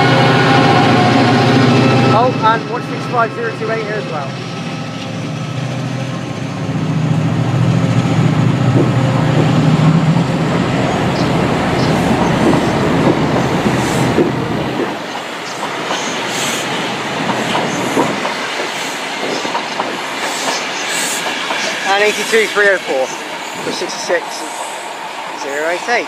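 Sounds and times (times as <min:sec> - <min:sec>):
diesel locomotive engine drone: 0:00.0 - 0:26.0
train wheels rattling: 0:07.8 - 0:26.0.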